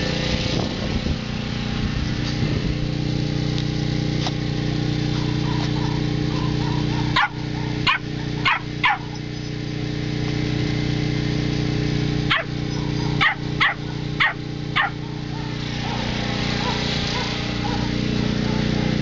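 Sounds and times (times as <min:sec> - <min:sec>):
low mechanical hum: 0:00.0 - 0:19.0
dog barking: 0:05.1 - 0:09.2, 0:12.3 - 0:18.9.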